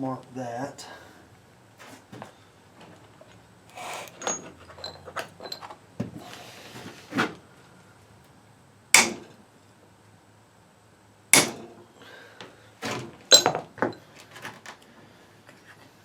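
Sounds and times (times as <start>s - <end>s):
tool clicks and scrapes: 3.7s - 5.7s
sharp metal knock: 9.0s - 9.3s, 11.4s - 11.7s.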